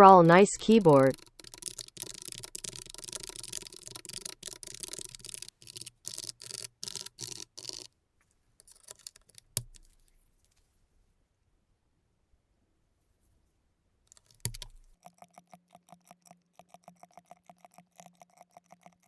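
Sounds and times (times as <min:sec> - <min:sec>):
clicky mechanical keyboard typing: 0:00.0 - 0:07.9, 0:08.6 - 0:10.0, 0:14.1 - 0:14.9.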